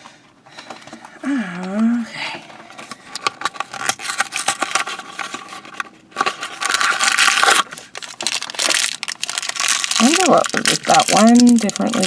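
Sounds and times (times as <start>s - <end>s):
wrapper crinkling and tearing: 3.2s - 12.0s.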